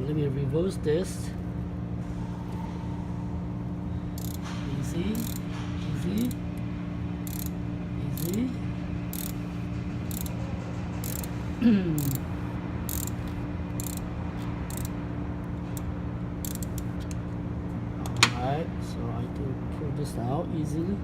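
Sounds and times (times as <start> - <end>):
steady low hum: 0.0 - 21.0
ratchet clicking: 4.2 - 6.6, 7.2 - 15.0, 15.6 - 17.2.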